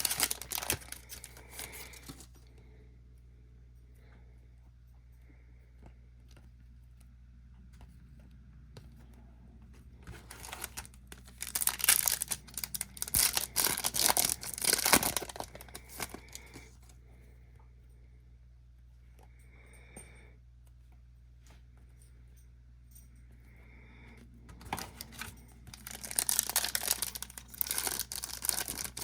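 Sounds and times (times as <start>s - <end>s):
foil wrapper tearing and crinkling: 0.0s - 2.2s, 10.2s - 16.6s, 24.7s - 29.0s.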